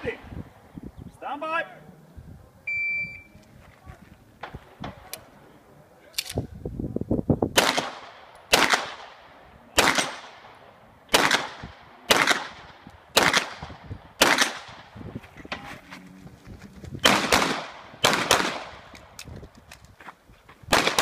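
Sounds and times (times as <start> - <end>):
pistol shots: 7.6 - 14.9, 17.0 - 19.0, 20.7 - 21.0.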